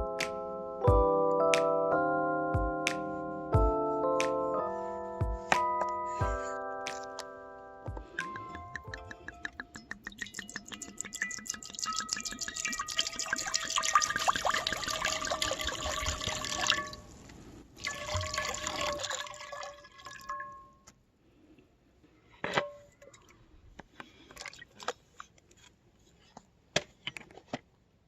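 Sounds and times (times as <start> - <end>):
liquid pouring and splashing: 8.2 - 17.2, 17.8 - 20.7, 24.0 - 25.3.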